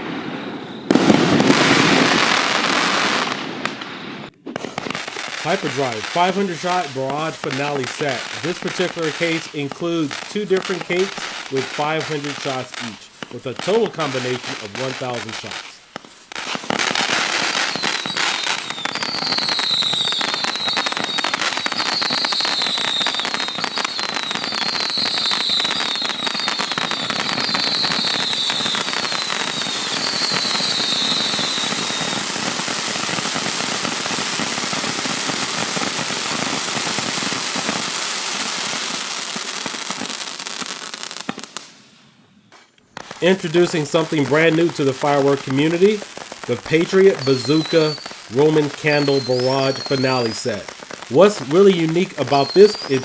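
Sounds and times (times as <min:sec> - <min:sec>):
short falling firework whistles: 0:00.0 - 0:08.4, 0:15.2 - 0:41.9, 0:47.2 - 0:51.2
firework barrage pops and crackles: 0:00.0 - 0:41.9, 0:42.5 - 0:53.0.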